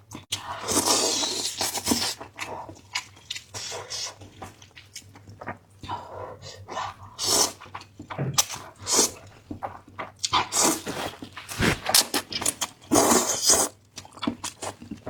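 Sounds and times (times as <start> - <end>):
smacking chews: 1.6 - 15.0
person slurping noodles: 10.4 - 13.7.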